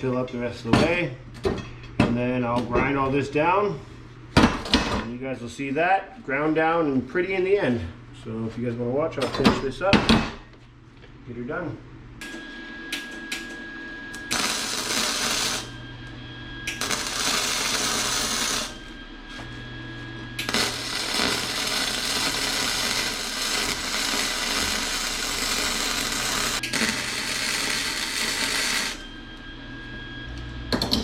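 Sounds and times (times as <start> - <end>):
electric welding arc: 14.1 - 15.7, 16.7 - 18.9, 20.4 - 29.1.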